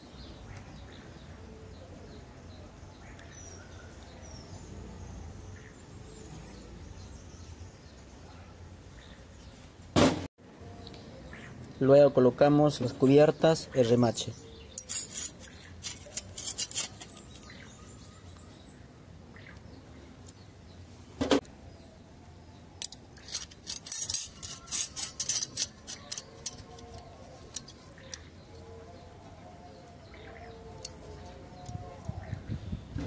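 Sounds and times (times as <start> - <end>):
small steel parts clinking: 14.8 - 17.6, 22.8 - 28.2.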